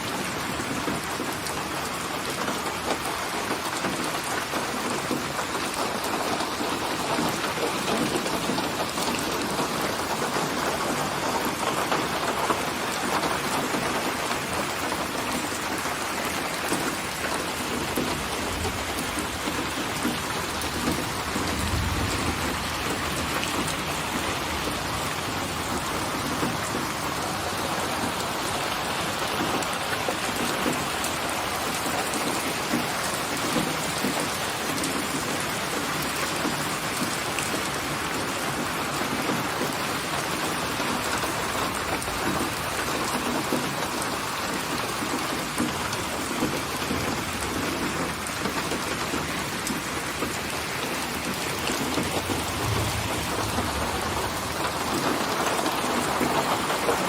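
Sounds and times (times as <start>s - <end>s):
steady rain: 0.0s - 57.0s
thunder rumbling: 17.9s - 28.5s, 51.2s - 57.0s.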